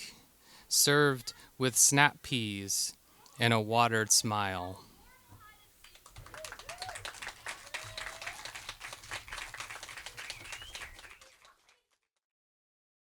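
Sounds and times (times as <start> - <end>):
audience clapping: 5.8 - 12.1.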